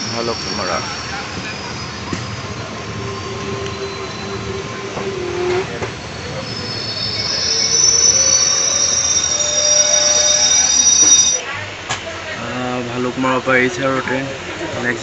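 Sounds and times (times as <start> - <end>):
wheels squealing against rails: 0.0 - 11.5
train carriage running on rails: 0.0 - 15.0.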